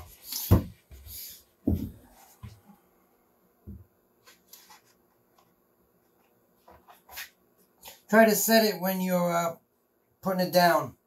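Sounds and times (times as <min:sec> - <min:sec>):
light taps and scuffs: 0:00.0 - 0:02.7.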